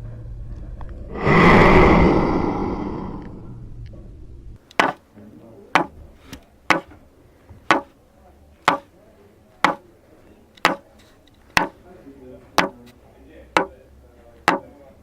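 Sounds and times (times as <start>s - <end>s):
loud sound effect: 1.1s - 3.7s.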